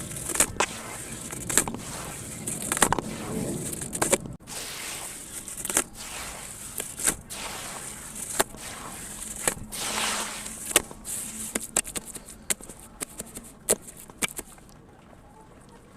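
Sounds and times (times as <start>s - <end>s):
chunks crumbling in water: 0.0s - 14.8s.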